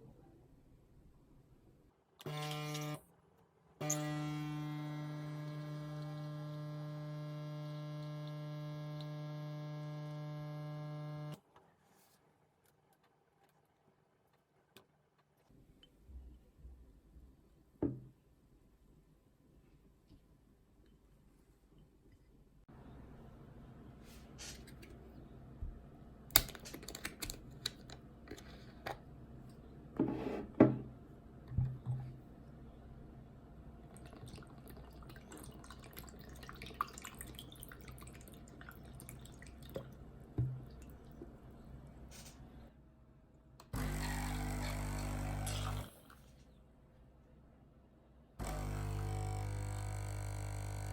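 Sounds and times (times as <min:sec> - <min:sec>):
espresso machine pump hum: 0:43.8 - 0:45.9, 0:48.4 - 0:50.9.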